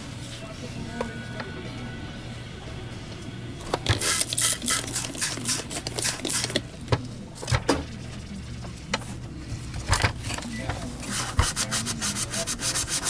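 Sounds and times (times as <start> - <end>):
steady low hum: 0.0 - 13.0
rubbing or scraping strokes: 11.0 - 13.0.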